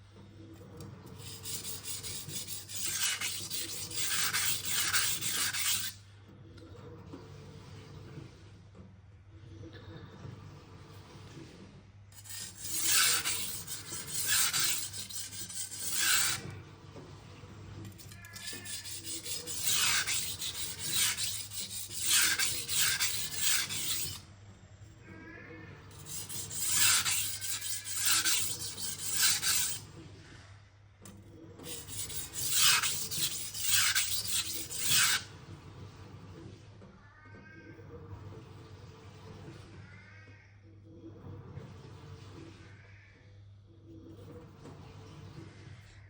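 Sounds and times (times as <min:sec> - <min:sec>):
knife scraping on whetstone: 0:01.1 - 0:06.0, 0:12.2 - 0:16.6, 0:17.8 - 0:24.2, 0:25.9 - 0:29.9, 0:31.6 - 0:35.3.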